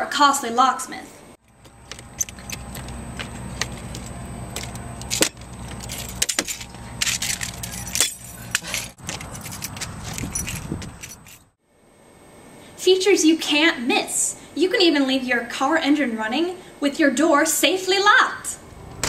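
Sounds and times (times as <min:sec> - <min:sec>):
keys jangling: 0:05.1 - 0:11.5.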